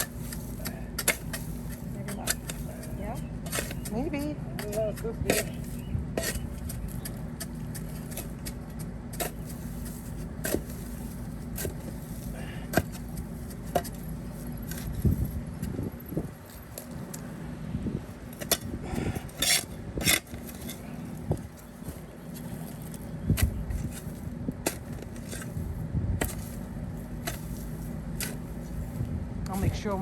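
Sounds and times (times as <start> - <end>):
metal shovel digging in soil: 0.0 - 17.4, 18.1 - 30.0
shovel clinks and scrapes: 0.0 - 17.4, 18.2 - 29.1.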